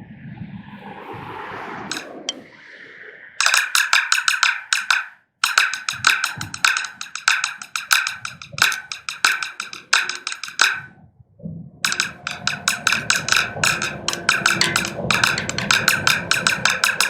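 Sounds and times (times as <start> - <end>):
drumsticks striking a drum: 1.9 - 2.4, 3.4 - 10.9, 11.8 - 17.0.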